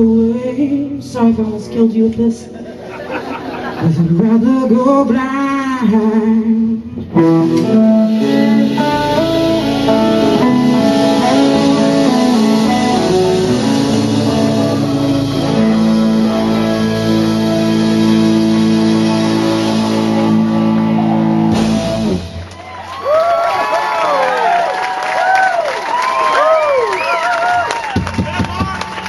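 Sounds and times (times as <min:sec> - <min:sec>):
blues band with guitar: 0:00.0 - 0:23.1
crowd cheering and whooping: 0:18.6 - 0:29.0.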